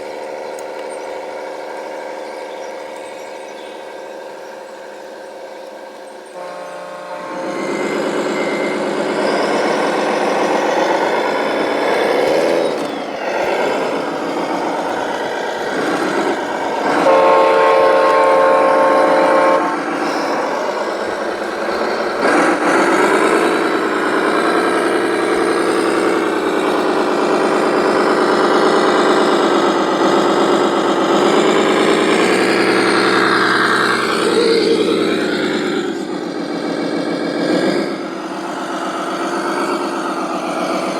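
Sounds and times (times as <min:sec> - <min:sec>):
electronic diesel engine sound: 0:00.0 - 0:40.9
multi-tone air horn: 0:06.3 - 0:09.9, 0:16.8 - 0:20.3.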